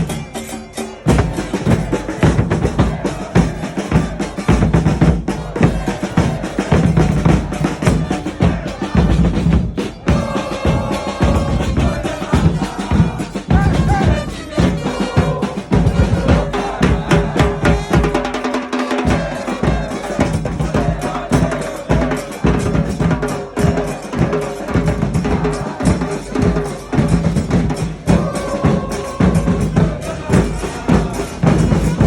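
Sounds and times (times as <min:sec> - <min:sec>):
drums beating fast rhythm: 0:00.0 - 0:32.0.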